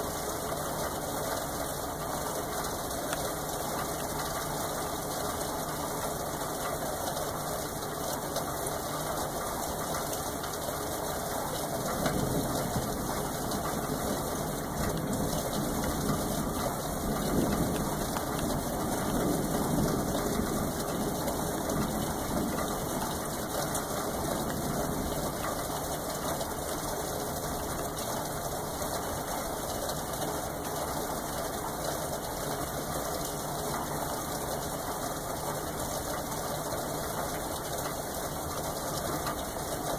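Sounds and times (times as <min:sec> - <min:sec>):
steady rain: 0:00.0 - 0:39.9
low roll of thunder: 0:11.8 - 0:26.2.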